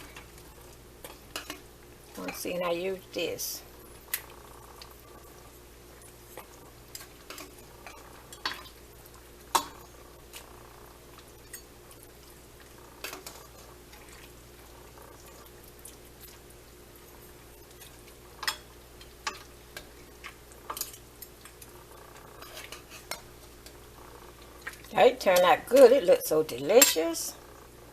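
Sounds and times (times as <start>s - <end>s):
metal utensil clinking against pot: 26.4s - 27.2s.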